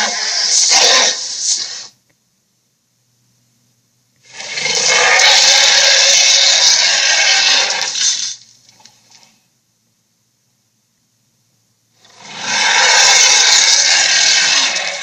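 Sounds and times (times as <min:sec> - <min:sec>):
loud rushing hiss: 0:00.0 - 0:02.0.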